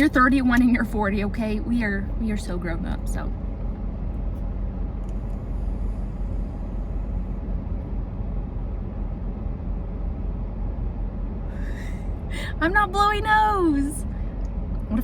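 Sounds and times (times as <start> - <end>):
car running inside cabin: 0.0 - 15.0.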